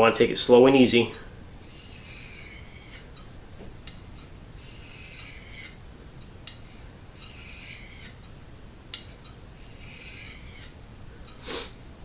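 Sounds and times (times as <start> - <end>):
knife scraping on sharpening stone: 1.6 - 5.8, 6.4 - 10.8.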